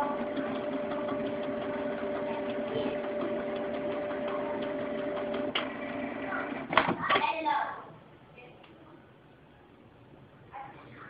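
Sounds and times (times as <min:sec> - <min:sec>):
printer motor humming: 0:00.0 - 0:06.8.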